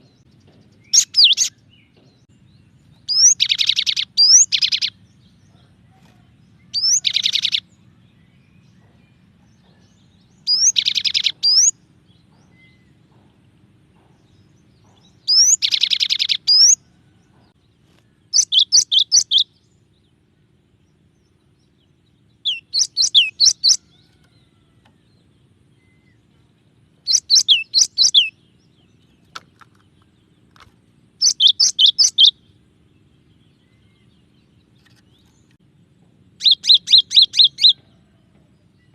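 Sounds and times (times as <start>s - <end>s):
bird singing trills and whistles: 0.0s - 13.1s, 14.3s - 16.9s, 18.1s - 20.2s, 21.2s - 24.2s, 27.0s - 30.6s, 31.2s - 35.6s, 36.3s - 38.2s.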